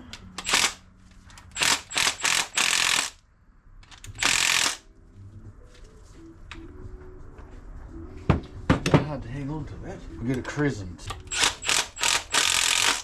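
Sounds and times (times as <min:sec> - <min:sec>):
ratchet wrench clicking: 0:00.4 - 0:00.8, 0:01.5 - 0:03.2, 0:04.1 - 0:04.8, 0:11.3 - 0:13.0.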